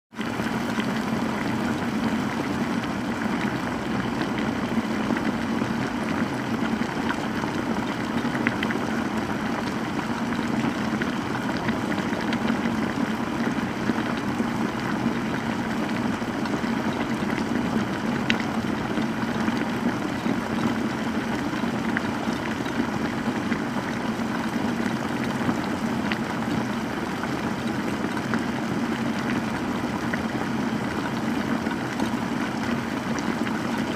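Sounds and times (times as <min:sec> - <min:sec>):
water boiling: 0:00.1 - 0:33.9.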